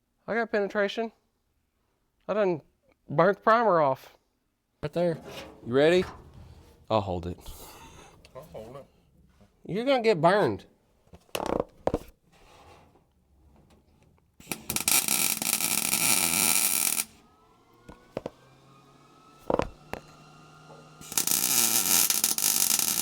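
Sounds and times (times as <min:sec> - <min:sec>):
short knocks: 0:04.9 - 0:08.3, 0:19.5 - 0:20.1
welding crackle: 0:14.4 - 0:17.2, 0:21.0 - 0:23.0.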